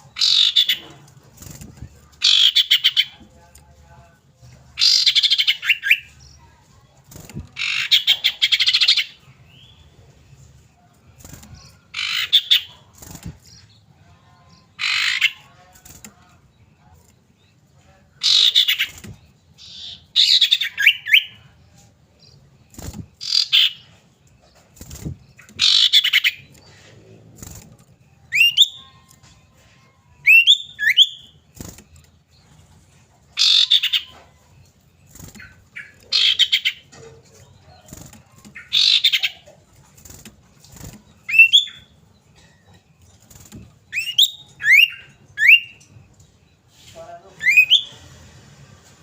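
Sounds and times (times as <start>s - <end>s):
bird harsh chattering calls: 0.1s - 0.9s, 2.2s - 3.1s, 4.8s - 6.1s, 7.6s - 9.2s, 11.6s - 13.2s, 14.8s - 15.4s, 22.8s - 24.0s, 24.8s - 26.7s, 33.4s - 34.2s, 35.1s - 36.9s, 37.8s - 39.7s.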